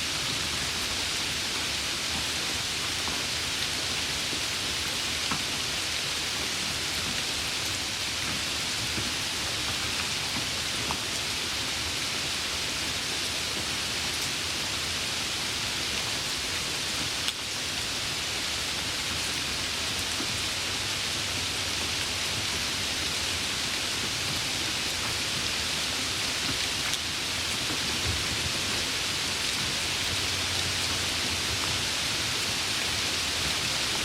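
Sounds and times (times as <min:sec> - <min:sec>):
heavy rain hissing: 0:00.0 - 0:34.0.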